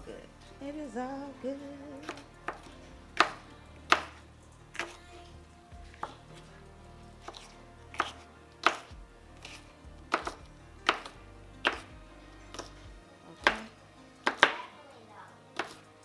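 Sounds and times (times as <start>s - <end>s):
knife chopping vegetables: 2.0s - 4.2s, 4.8s - 5.0s, 7.2s - 11.9s, 12.5s - 12.8s, 13.4s - 14.6s, 15.6s - 15.8s.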